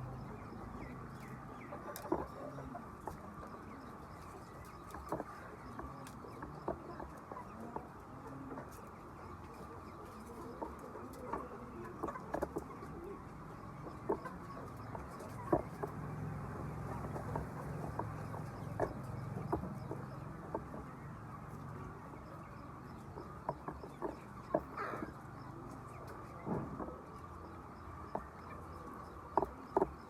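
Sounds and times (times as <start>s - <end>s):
hens clucking: 0.0s - 30.0s.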